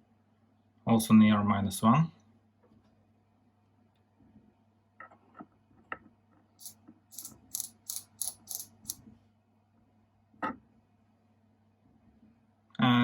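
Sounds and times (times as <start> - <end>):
scratchy ratchet strokes: 6.6 - 9.0.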